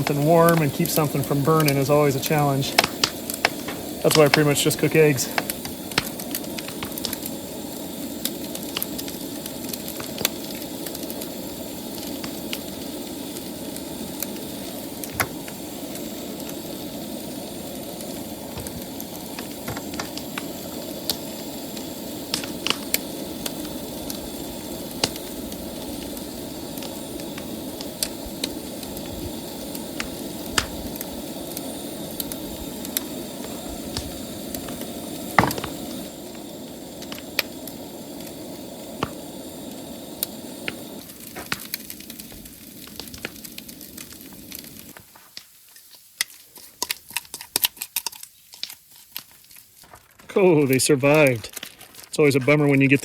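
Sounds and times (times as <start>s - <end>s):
camp stove burner running: 0.0s - 53.0s
food sizzling with pops: 0.0s - 53.0s.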